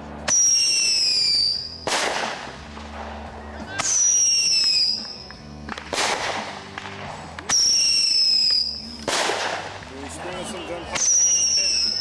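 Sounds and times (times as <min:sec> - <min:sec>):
firework whistle: 0:00.3 - 0:02.2, 0:03.8 - 0:05.2, 0:07.5 - 0:09.4, 0:11.0 - 0:12.0
firework burst: 0:00.3 - 0:03.2, 0:05.8 - 0:09.7.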